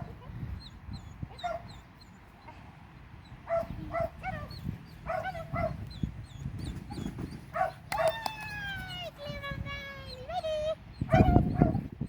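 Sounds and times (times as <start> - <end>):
dog whining and yipping: 10.1 - 11.9.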